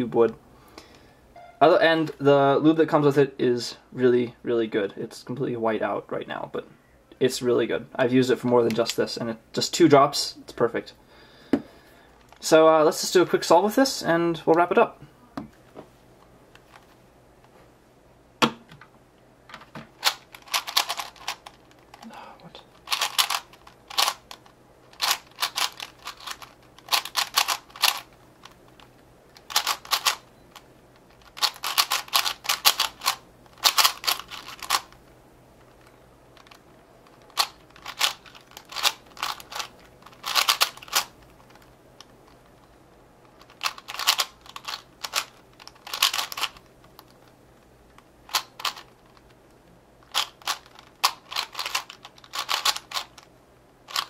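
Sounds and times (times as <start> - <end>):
rapid plastic clicking of cube: 19.5 - 22.1, 22.7 - 54.0.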